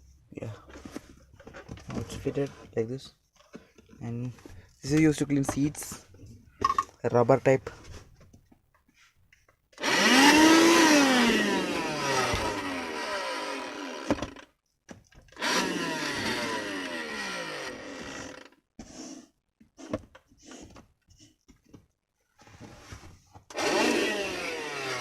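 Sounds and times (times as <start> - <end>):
vacuum cleaner motor running: 9.8 - 14.4, 15.4 - 18.4, 23.5 - 25.0.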